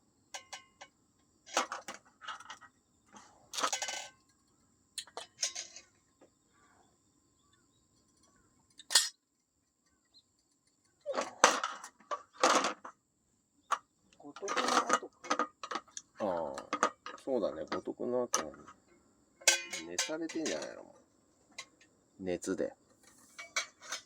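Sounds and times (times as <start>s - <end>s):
metal cookware clinking: 0.4s - 0.9s, 5.0s - 5.8s, 8.8s - 9.2s, 19.4s - 20.8s, 23.2s - 24.0s.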